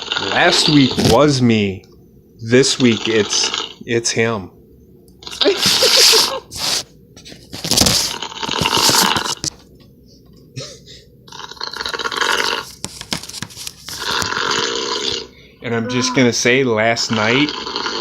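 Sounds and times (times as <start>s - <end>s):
man snoring over phone: 14.0s - 16.3s, 17.0s - 18.0s.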